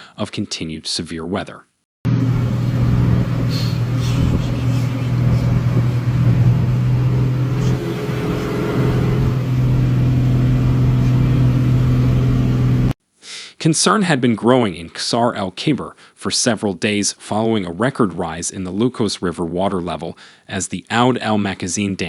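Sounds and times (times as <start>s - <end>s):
rushing noise: 2.1s - 13.0s
vehicle engine humming: 2.1s - 13.0s.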